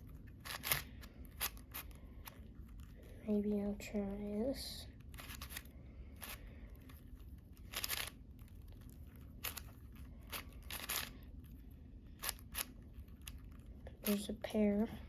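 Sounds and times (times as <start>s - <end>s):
speed cube layers clacking: 0.0s - 2.9s, 5.0s - 11.2s, 12.2s - 13.6s.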